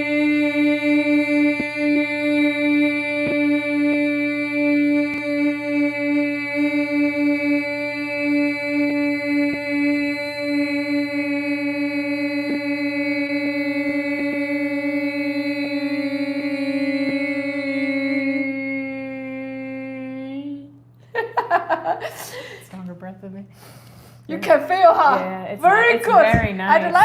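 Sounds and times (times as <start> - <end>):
person singing a long note: 0.0 - 20.8.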